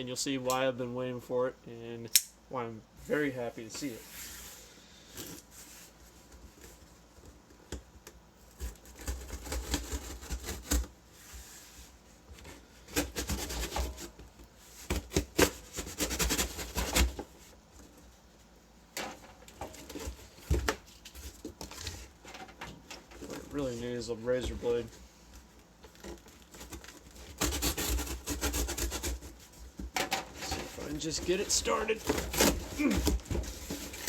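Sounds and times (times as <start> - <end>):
hands rubbing and scraping cardboard: 8.4 - 18.6, 23.1 - 34.0.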